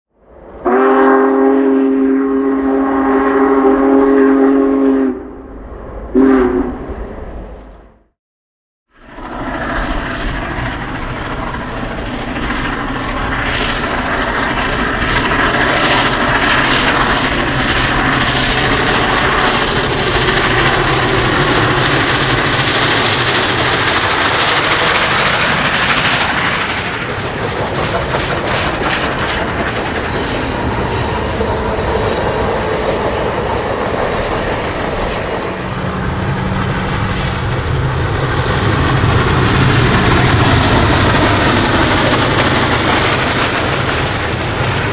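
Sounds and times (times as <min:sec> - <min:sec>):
steam locomotive running past: 0:09.1 - 0:44.9
steam exhaust beats: 0:09.2 - 0:44.9.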